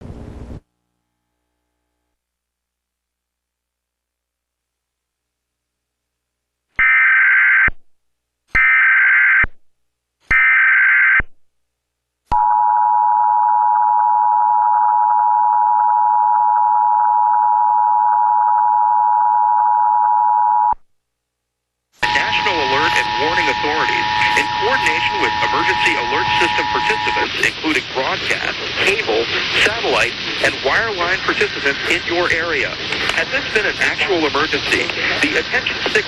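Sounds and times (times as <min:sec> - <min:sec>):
two-tone attention signal: 0:22.0 - 0:27.6
data header bursts: 0:22.0 - 0:36.0.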